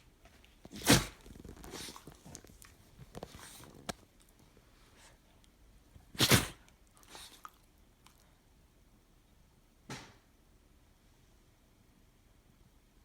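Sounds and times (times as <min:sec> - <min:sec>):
sniffs and snorts: 0:00.7 - 0:03.9, 0:06.1 - 0:07.6
sharp sneezes: 0:00.8 - 0:01.2, 0:06.2 - 0:07.4.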